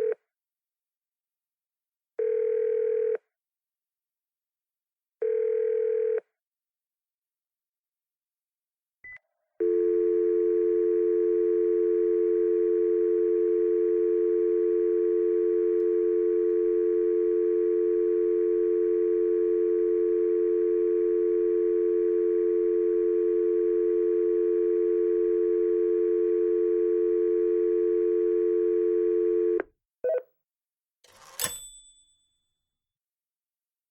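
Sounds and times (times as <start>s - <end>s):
telephone dial tone: 9.6s - 30.2s, 31.1s - 31.8s.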